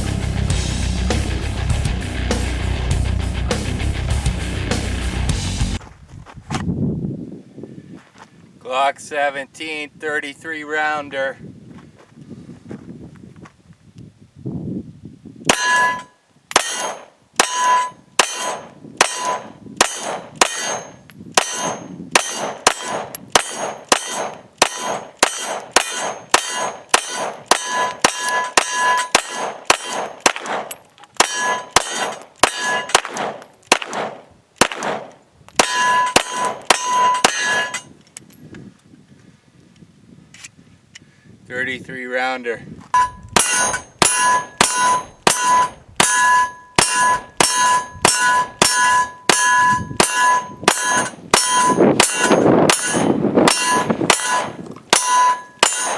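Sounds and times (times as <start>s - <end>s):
steel target ringing: 15.5s - 30.2s, 31.2s - 33.1s, 35.6s - 37.9s, 43.0s - 55.9s
pistol shots: 18.2s - 37.8s, 50.0s - 55.9s.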